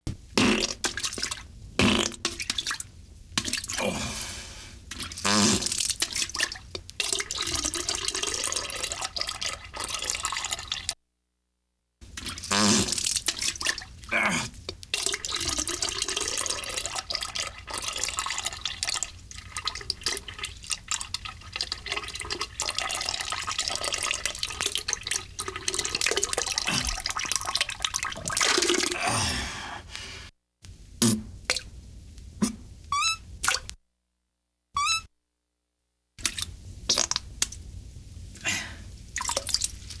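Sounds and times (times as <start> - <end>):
comic wet fart sounds: 0.3 - 2.8, 4.9 - 6.5, 12.1 - 14.7, 25.9 - 29.2, 31.0 - 31.7, 32.4 - 33.8, 34.8 - 35.1, 36.2 - 37.6.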